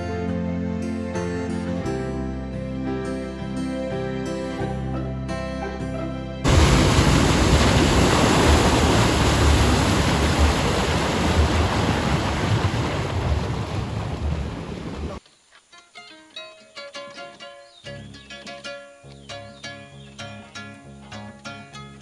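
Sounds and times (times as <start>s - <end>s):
rushing water: 6.5s - 15.2s
wind buffeting microphone: 6.5s - 15.2s.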